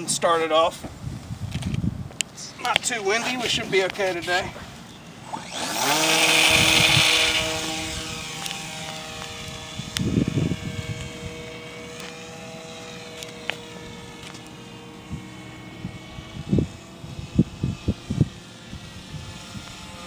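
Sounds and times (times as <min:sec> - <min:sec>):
model airplane motor whine: 0:04.2 - 0:20.0.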